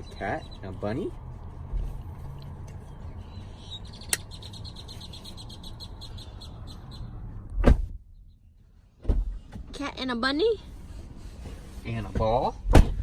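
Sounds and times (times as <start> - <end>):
bird chirping: 0.0 - 7.5, 8.1 - 8.9.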